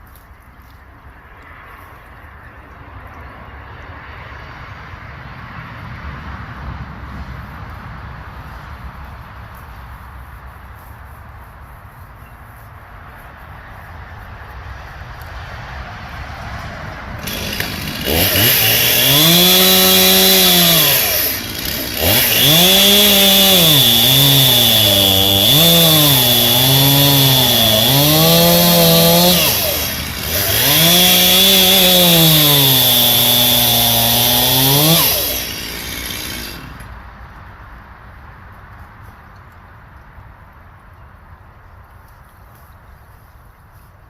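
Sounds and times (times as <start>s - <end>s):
chainsaw revving and idling: 17.2s - 37.0s.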